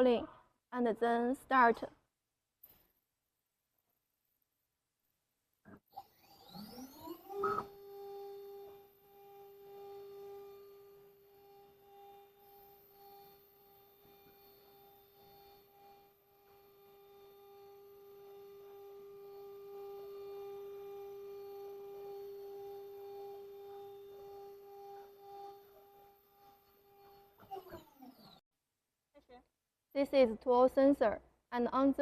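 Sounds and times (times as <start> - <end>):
spindle motor whine: 5.9 - 28.4
faint high whine: 6.4 - 28.4.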